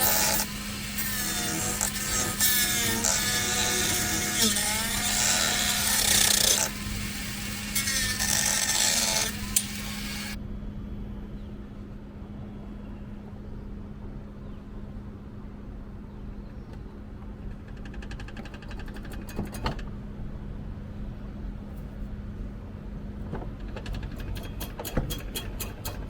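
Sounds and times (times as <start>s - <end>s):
power tool rasping: 0.0s - 10.4s, 23.6s - 26.0s
steady low hum: 0.0s - 26.0s.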